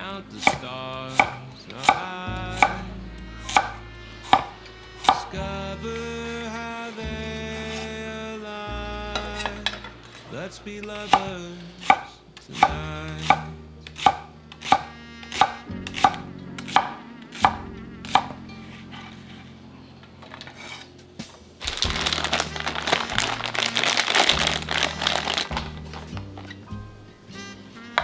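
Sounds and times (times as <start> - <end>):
soft background music: 0.0 - 28.0
knife chopping on cutting board: 0.4 - 2.8, 3.5 - 5.3, 7.5 - 7.9, 11.0 - 18.4.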